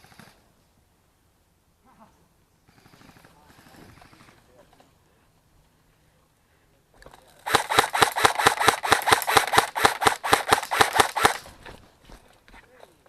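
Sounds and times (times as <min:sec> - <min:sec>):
airsoft gun firing shots: 0:07.4 - 0:11.6.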